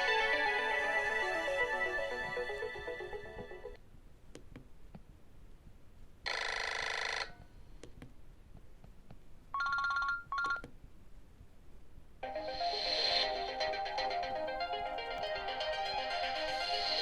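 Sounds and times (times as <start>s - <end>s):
mobile phone ringtone: 9.6s - 10.6s, 12.2s - 17.0s.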